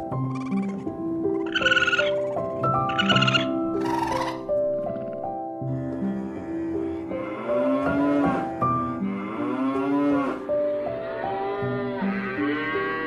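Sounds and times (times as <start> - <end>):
background music: 0.0 - 13.0
cow mooing: 5.8 - 13.0.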